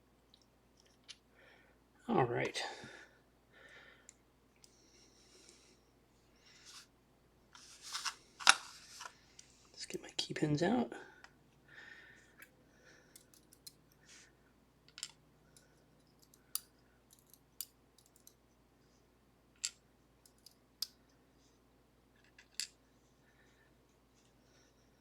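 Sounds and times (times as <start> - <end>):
small metallic clicks of lock pins: 13.1 - 13.8, 14.9 - 18.4, 19.6 - 21.0.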